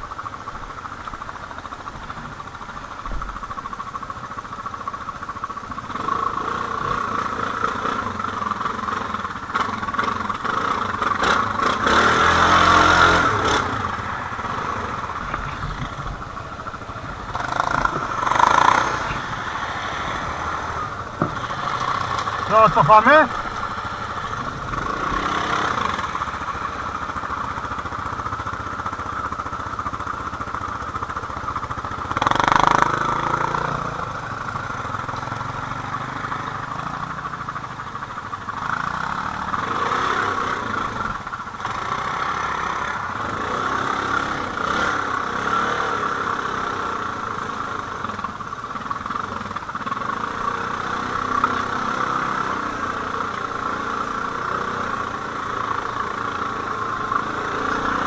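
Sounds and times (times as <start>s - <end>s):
atv engine revving: 0.0s - 58.0s.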